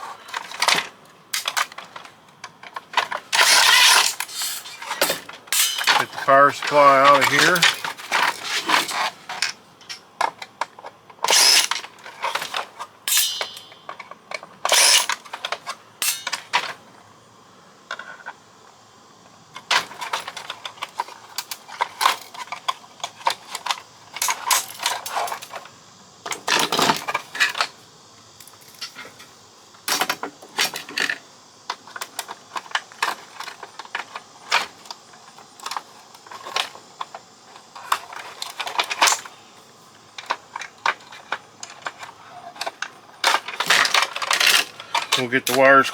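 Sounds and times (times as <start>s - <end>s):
plastic and metal parts clattering: 0.3s - 16.8s, 19.6s - 25.7s, 26.3s - 27.8s, 29.9s - 39.3s, 40.1s - 45.9s.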